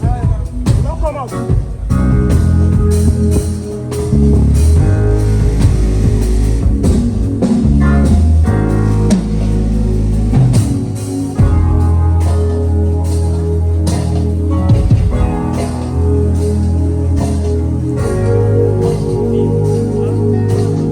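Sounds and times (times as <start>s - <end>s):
drum kit: 0.0s - 20.9s
electric guitar playing: 0.0s - 20.9s
heavy held low notes: 0.0s - 20.9s.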